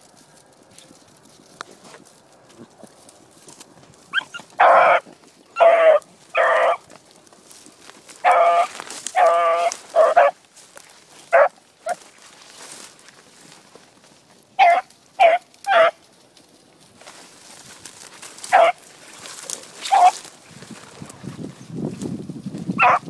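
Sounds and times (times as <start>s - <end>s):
dog barking: 4.1s - 5.0s, 5.6s - 6.8s, 8.2s - 10.4s, 11.3s - 12.0s, 14.6s - 16.0s, 18.5s - 18.8s, 19.9s - 20.2s, 22.8s - 23.0s.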